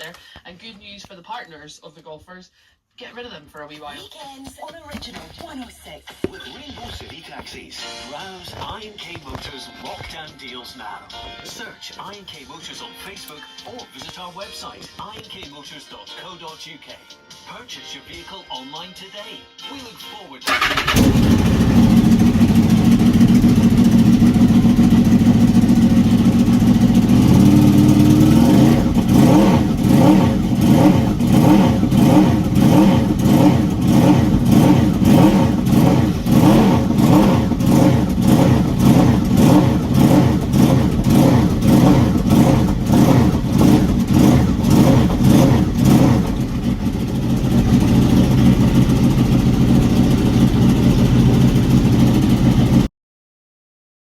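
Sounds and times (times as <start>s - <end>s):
motorcycle engine idling and revving: 20.5s - 52.9s.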